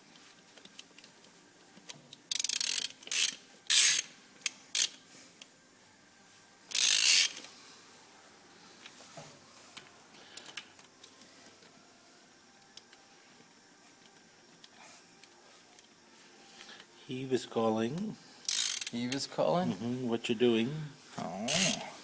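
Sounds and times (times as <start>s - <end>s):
ratchet wrench clicking: 2.3s - 5.0s, 6.7s - 7.4s, 18.4s - 19.3s, 21.5s - 21.8s.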